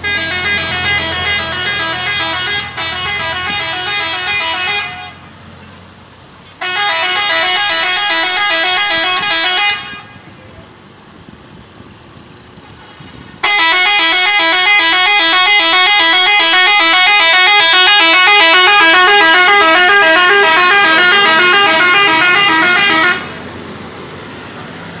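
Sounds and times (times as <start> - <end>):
musical bus horn tune: 0.0 - 5.3, 6.6 - 10.3, 13.4 - 23.4.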